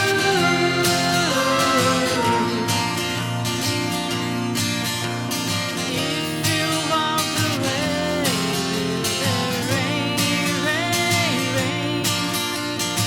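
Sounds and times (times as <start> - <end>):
sliding melody line: 0.0 - 3.9
acoustic guitar strumming: 0.0 - 13.0.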